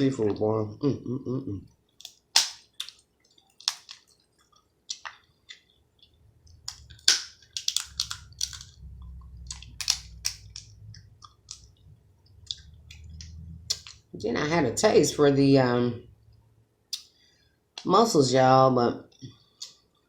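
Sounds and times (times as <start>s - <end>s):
crab shells cracking: 1.9s - 11.8s.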